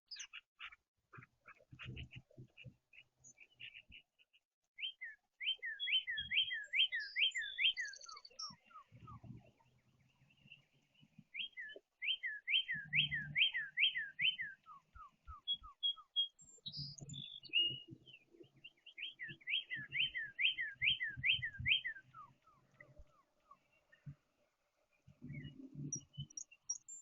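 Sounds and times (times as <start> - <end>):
songbird whistling: 4.8 - 9.2, 11.3 - 18.2, 18.9 - 22.6.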